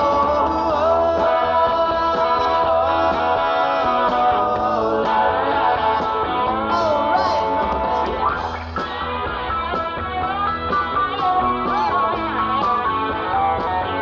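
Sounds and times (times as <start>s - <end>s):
live rock band playing: 0.0s - 14.0s.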